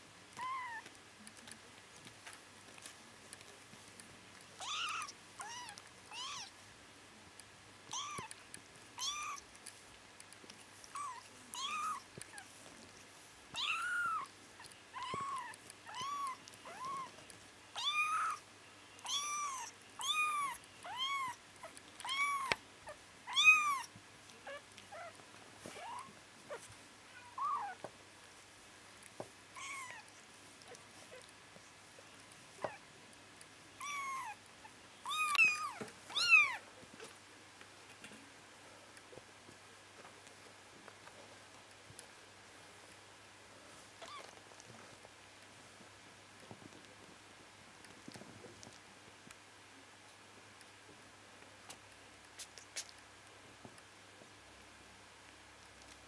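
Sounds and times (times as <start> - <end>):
kittens mewing: 13.6 - 14.3, 29.6 - 30.1, 33.8 - 34.4.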